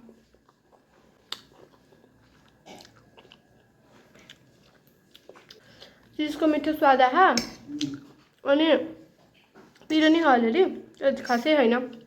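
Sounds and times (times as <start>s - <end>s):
person chewing food: 0.0s - 6.2s.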